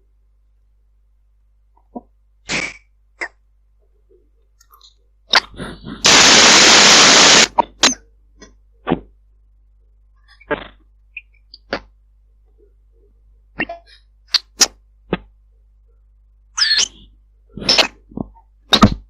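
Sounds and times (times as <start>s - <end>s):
harsh clipped static burst: 6.0s - 7.6s.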